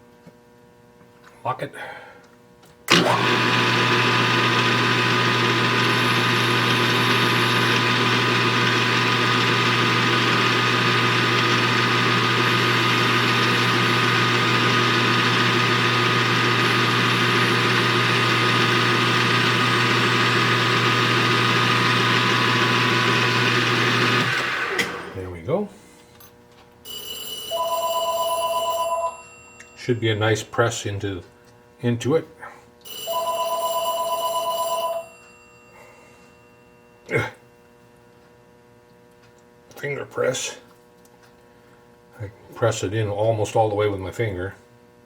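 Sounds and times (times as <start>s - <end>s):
metal lathe humming and whining: 2.9s - 25.2s.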